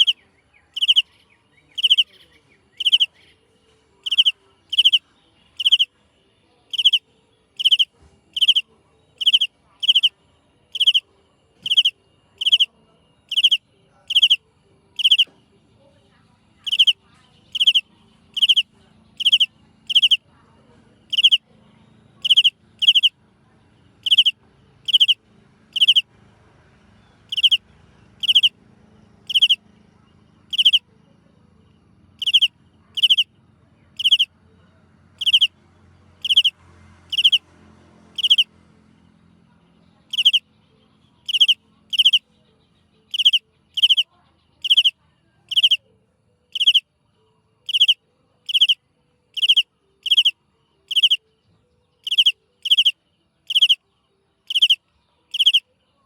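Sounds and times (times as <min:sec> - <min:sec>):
shrill high chirps: 0:00.8 - 0:01.1, 0:01.8 - 0:02.1, 0:02.8 - 0:03.1, 0:04.0 - 0:05.0, 0:05.6 - 0:05.9, 0:06.7 - 0:07.0, 0:07.6 - 0:08.6, 0:09.2 - 0:10.1, 0:10.7 - 0:11.0, 0:11.6 - 0:12.7, 0:13.3 - 0:14.4, 0:15.0 - 0:15.3, 0:16.6 - 0:20.2, 0:21.1 - 0:21.4, 0:22.2 - 0:23.1, 0:24.0 - 0:26.0, 0:27.3 - 0:27.6, 0:28.2 - 0:28.5, 0:29.3 - 0:29.6, 0:30.5 - 0:30.8, 0:32.2 - 0:33.3, 0:34.0 - 0:34.3, 0:35.2 - 0:35.5, 0:36.2 - 0:36.5, 0:37.1 - 0:37.4, 0:38.2 - 0:38.5, 0:40.1 - 0:40.4, 0:41.2 - 0:42.2, 0:43.1 - 0:45.8, 0:46.5 - 0:46.8, 0:47.7 - 0:48.8, 0:49.4 - 0:51.2, 0:52.0 - 0:53.8, 0:54.5 - 0:55.6.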